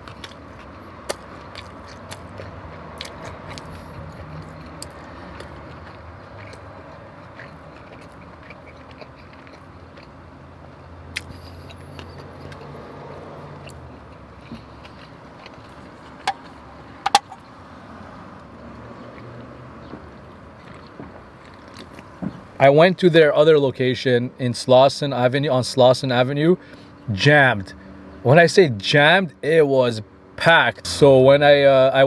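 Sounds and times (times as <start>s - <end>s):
soft chewing: 0.0s - 17.5s, 18.3s - 22.6s.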